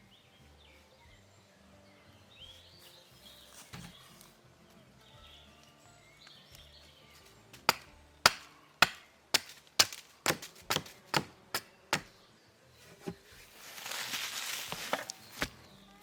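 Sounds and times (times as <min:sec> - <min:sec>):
axe chopping wood: 0:07.5 - 0:12.2, 0:14.7 - 0:15.6.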